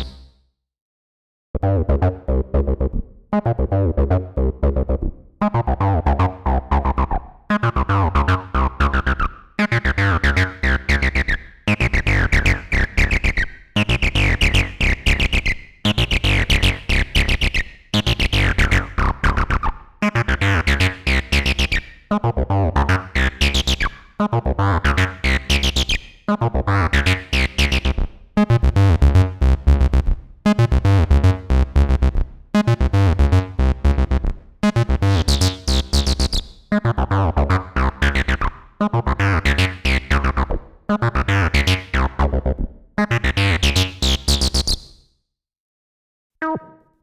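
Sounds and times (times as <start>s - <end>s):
squelchy acid synth bassline: 0.0s - 0.2s, 7.8s - 11.2s, 26.6s - 44.8s.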